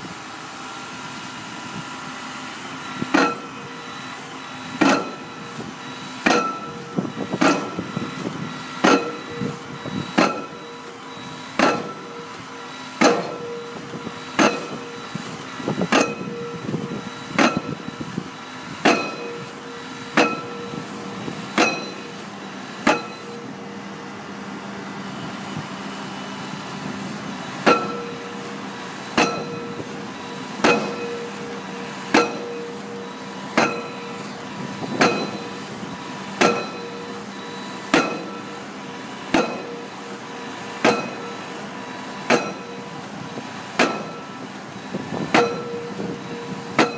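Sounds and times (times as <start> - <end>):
rig engine humming: 0.0 - 46.9
pile driver hammer striking: 3.0 - 3.6, 4.8 - 5.4, 6.2 - 8.2, 8.8 - 10.8, 11.6 - 12.3, 13.0 - 15.1, 15.8 - 16.5, 17.4 - 17.9, 18.8 - 19.5, 20.1 - 20.8, 21.5 - 22.2, 22.8 - 23.4, 27.6 - 28.4, 29.1 - 30.0, 30.6 - 31.5, 32.1 - 32.9, 33.5 - 35.6, 36.4 - 38.5, 39.3 - 39.9, 40.8 - 41.4, 42.2 - 42.9, 43.8 - 44.4, 45.2 - 46.9.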